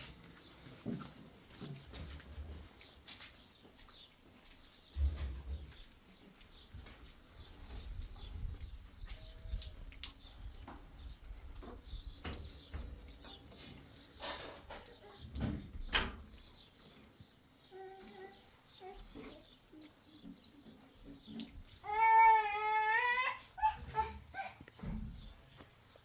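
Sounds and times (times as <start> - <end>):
rain dripping: 0.0 - 26.0.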